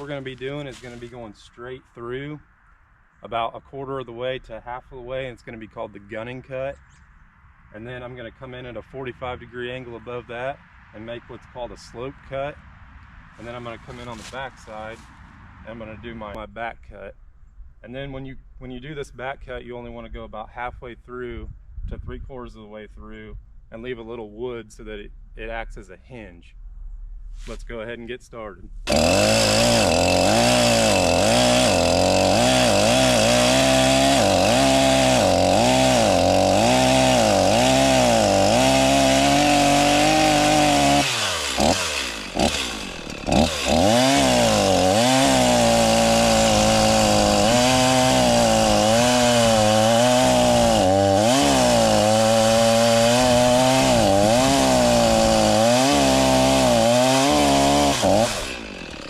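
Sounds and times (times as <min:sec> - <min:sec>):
chainsaw cutting wood: 0:00.0 - 0:01.2, 0:13.4 - 0:15.0, 0:28.9 - 0:59.0.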